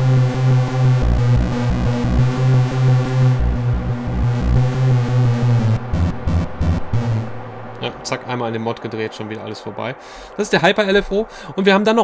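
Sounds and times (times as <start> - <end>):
throbbing bass: 0.0 - 8.0
overdriven synthesizer drone: 0.0 - 8.9.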